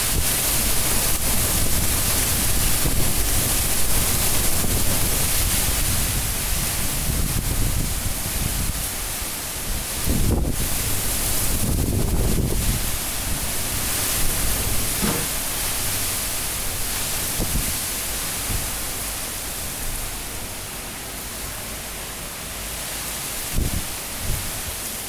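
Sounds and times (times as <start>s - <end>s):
high wind gusting: 0.0s - 20.6s
low buffeting rumble: 11.6s - 20.4s
low bumps: 14.1s - 16.2s.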